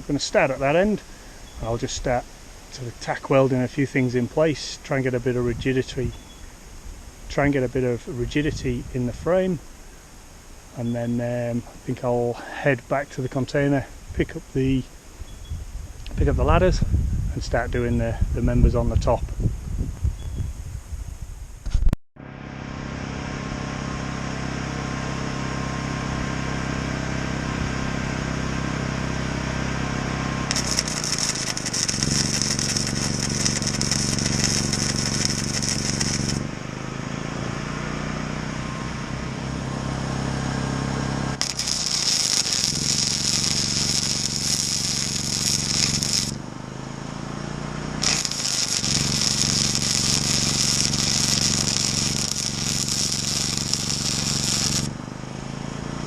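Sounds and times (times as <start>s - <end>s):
generator engine running: 22.2s - 56.0s
arc welder crackling: 28.7s - 36.5s, 41.0s - 46.4s, 47.9s - 55.0s.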